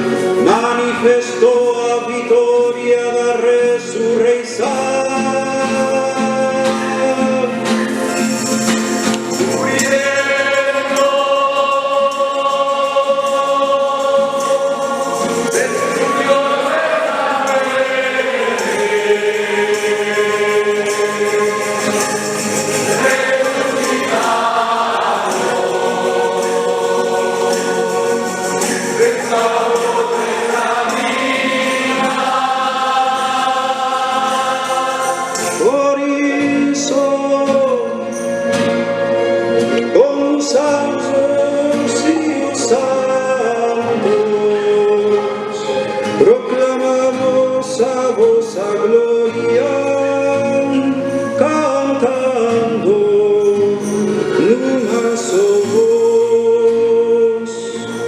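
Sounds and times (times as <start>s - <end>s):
church choir singing a hymn: 9.1s - 37.1s, 47.1s - 58.0s.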